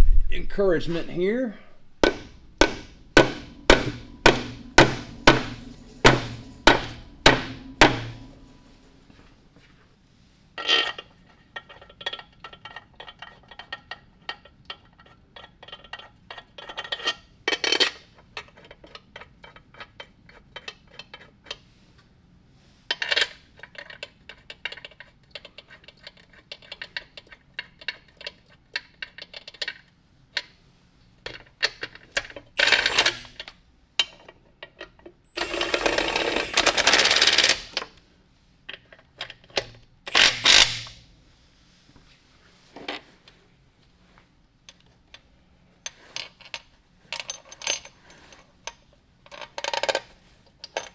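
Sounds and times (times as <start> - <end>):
hand ratchet clicking: 40.1 - 41.0.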